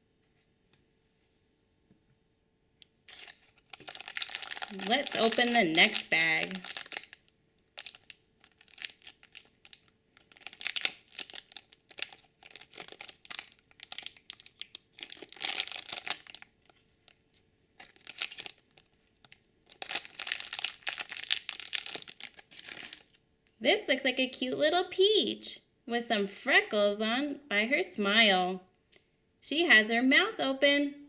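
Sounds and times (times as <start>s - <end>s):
bag tearing and rustling: 3.1s - 7.2s, 15.0s - 16.4s, 17.8s - 18.6s, 19.8s - 23.0s.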